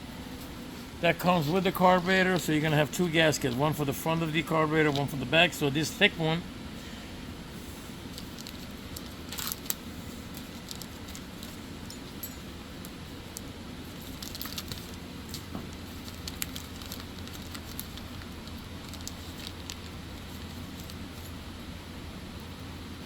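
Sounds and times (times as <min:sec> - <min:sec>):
steady low hum: 0:00.0 - 0:23.0
light clicks and crinkles: 0:08.1 - 0:21.4.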